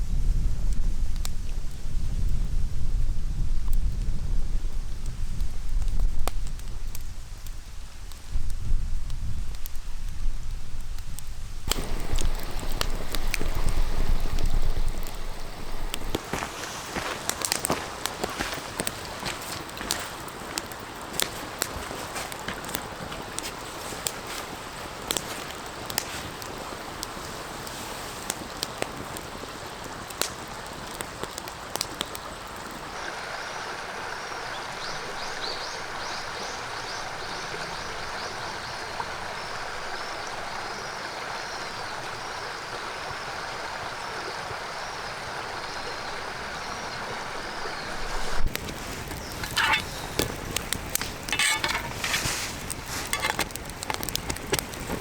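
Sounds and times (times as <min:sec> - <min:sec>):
creek rushing: 0:11.7 - 0:55.0
clatter and crackles: 0:48.4 - 0:55.0.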